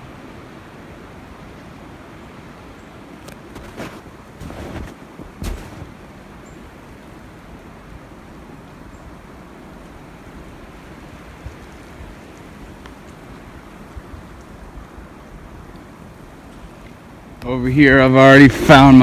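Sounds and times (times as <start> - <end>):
footsteps in snow: 3.1 - 6.2.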